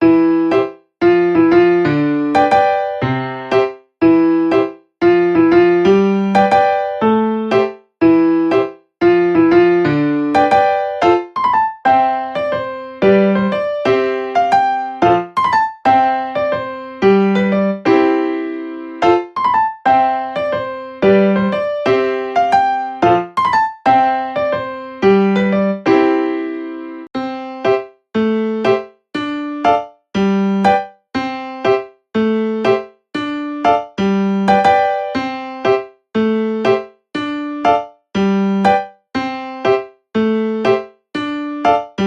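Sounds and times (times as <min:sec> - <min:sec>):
solo piano melody: 0:00.0 - 0:42.0.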